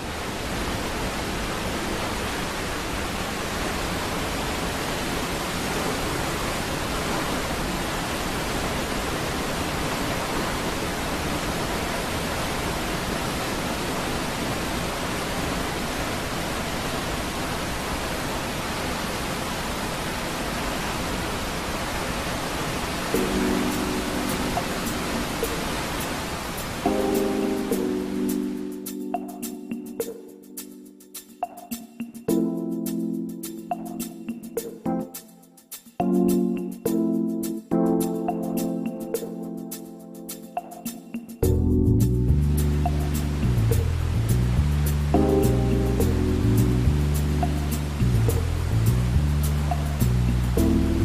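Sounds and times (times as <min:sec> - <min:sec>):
music: 0:23.1 - 0:25.8, 0:26.6 - 0:51.0.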